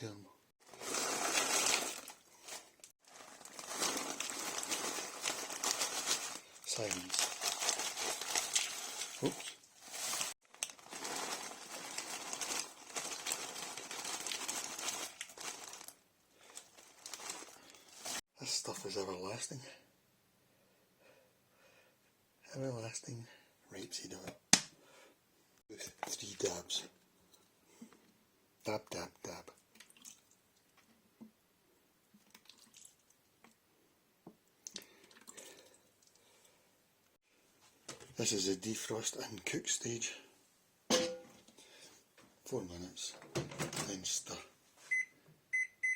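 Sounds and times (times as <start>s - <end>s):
food packaging rustling: 0.6s - 18.2s.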